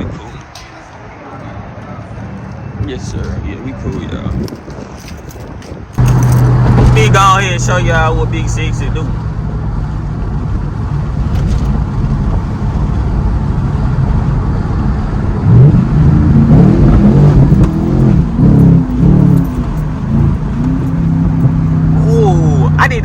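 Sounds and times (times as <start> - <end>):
car engine accelerating hard: 6.0 - 23.0.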